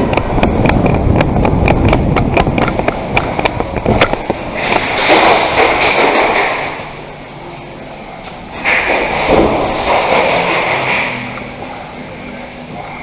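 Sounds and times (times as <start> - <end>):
gear knocking and rattling: 0.0 - 6.8
low rumble of rubbing and wind: 0.0 - 7.0.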